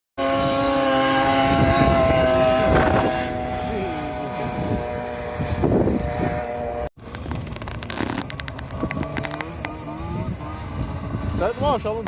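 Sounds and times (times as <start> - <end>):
engines running: 0.2 - 12.0.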